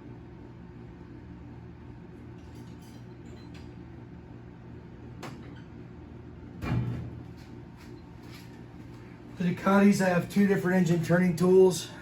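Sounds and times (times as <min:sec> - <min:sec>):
low workshop hum: 0:00.0 - 0:12.0.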